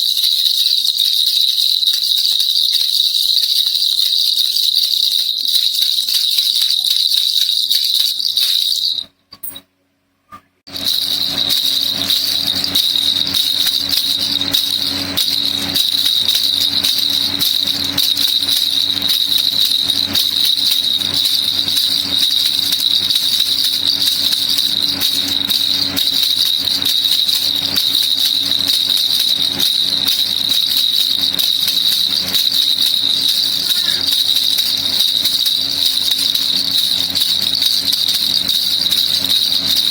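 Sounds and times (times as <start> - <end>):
baby rattle shaking: 0.0 - 9.6, 10.7 - 39.9
steady high ring: 10.7 - 39.9.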